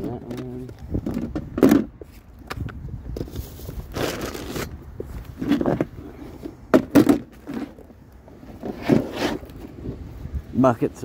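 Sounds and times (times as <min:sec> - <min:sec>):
objects clunking and knocking: 0:00.0 - 0:03.4, 0:05.3 - 0:09.4
rustles: 0:00.0 - 0:11.0.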